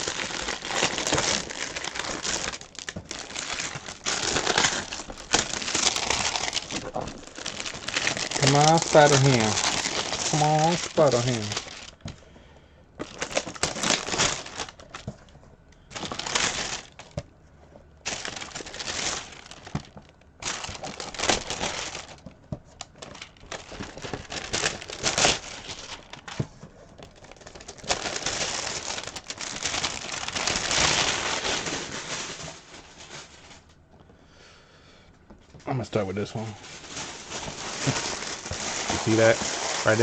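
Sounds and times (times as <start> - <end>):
packaging crinkling: 0.0 - 33.8, 36.6 - 40.0.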